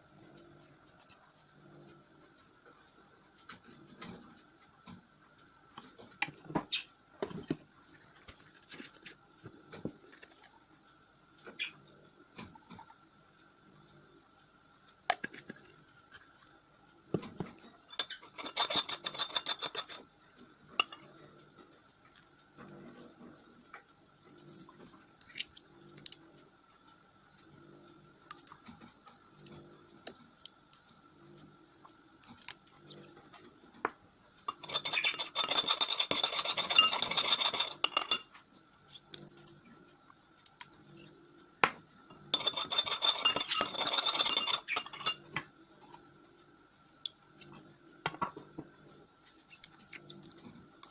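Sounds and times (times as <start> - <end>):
utensil scraping a container: 18.0 - 20.0, 34.5 - 38.2, 42.3 - 45.2.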